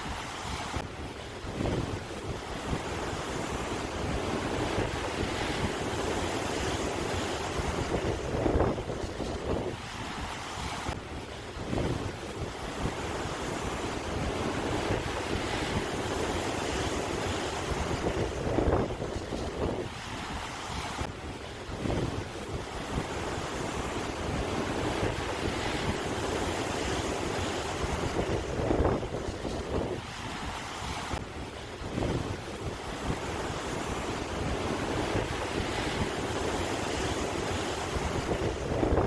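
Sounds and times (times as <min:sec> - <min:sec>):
sea waves surging: 0:00.0 - 0:39.0
wind buffeting microphone: 0:00.0 - 0:39.0.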